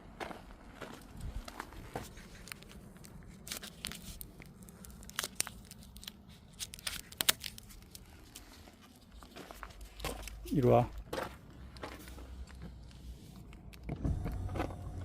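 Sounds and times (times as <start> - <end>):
crinkling and tearing: 1.2 - 11.1.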